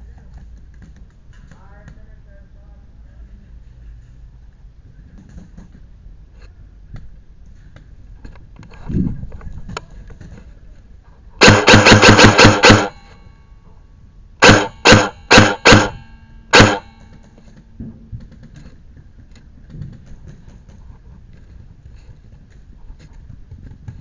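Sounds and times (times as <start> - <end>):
airsoft rifle shots: 11.4 - 13.2, 14.4 - 17.2.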